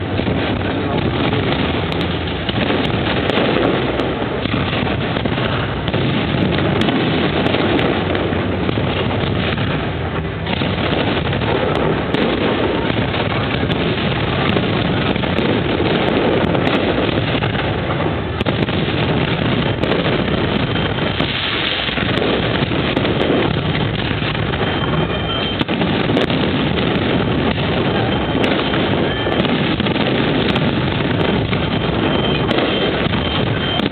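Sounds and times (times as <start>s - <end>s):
fireworks bangs and crackling: 0.0s - 33.9s.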